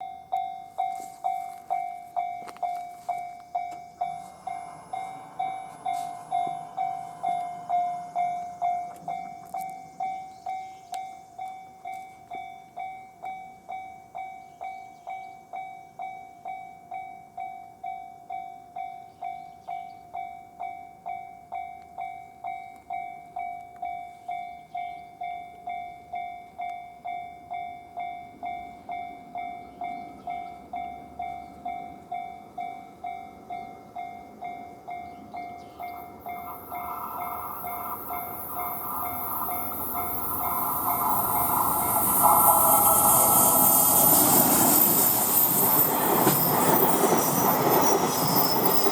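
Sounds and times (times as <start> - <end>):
level crossing warning bell ringing: 0.0 - 48.9
train rushing past: 3.5 - 10.4, 34.8 - 48.9.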